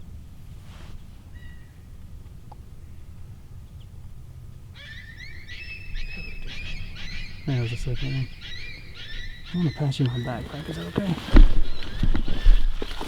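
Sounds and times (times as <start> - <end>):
coyotes yipping and howling: 4.7 - 13.0.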